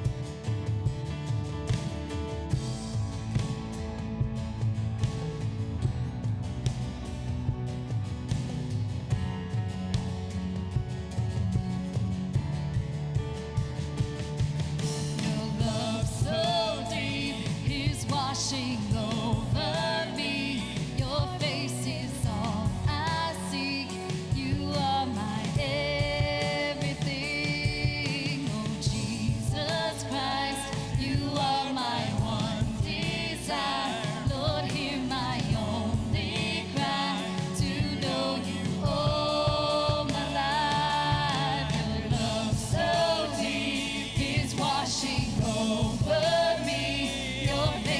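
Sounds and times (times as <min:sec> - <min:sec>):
group singing choir-like: 0:14.8 - 0:47.9
band with steady beat: 0:24.1 - 0:47.9.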